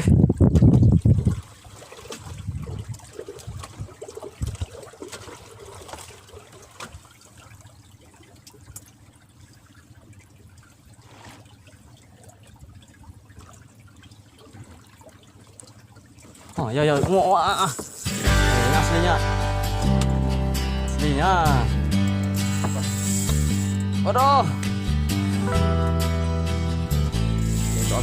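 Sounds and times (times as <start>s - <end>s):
water trickling and lapping: 0.0s - 18.4s.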